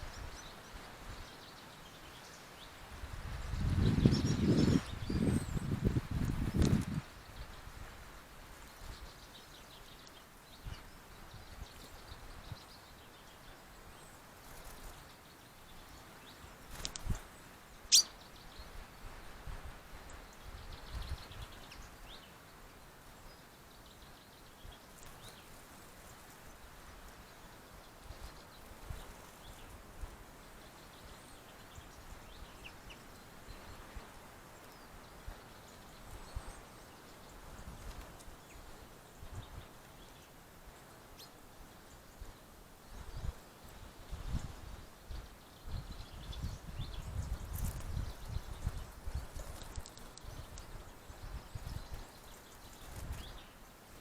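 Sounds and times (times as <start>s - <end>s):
faint bird chirps: 8.6s - 19.2s.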